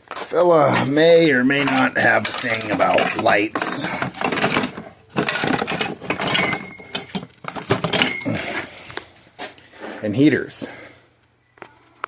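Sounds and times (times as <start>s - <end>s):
metallic clattering and clinking: 0.8s - 9.0s
high ringing tones: 6.1s - 8.8s.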